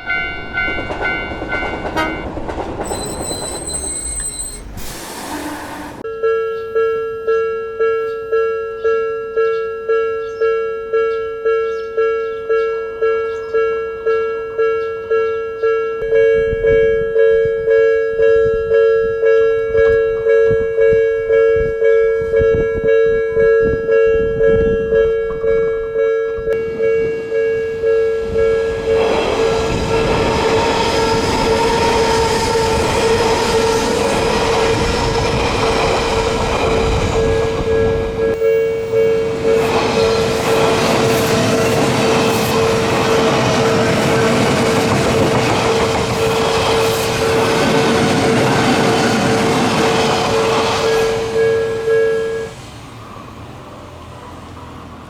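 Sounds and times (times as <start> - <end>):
level-crossing alarm ringing: 0.0 - 4.9, 6.0 - 52.6
train wheels clacking over rail joints: 0.5 - 6.0, 39.2 - 51.4.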